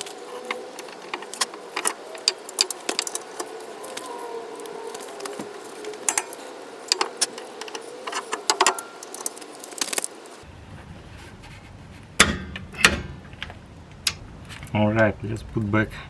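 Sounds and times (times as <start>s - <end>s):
small metal parts clinking: 0.0s - 10.4s.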